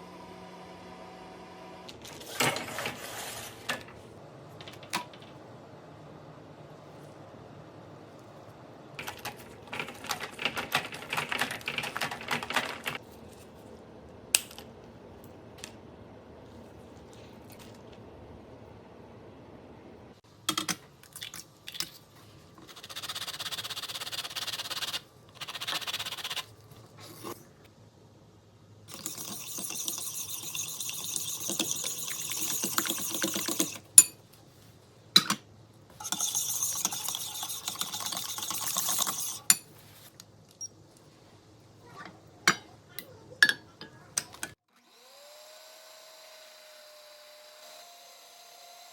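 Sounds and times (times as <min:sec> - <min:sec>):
utensils and containers clinking: 0:09.0 - 0:13.0, 0:28.9 - 0:34.2, 0:35.2 - 0:39.9.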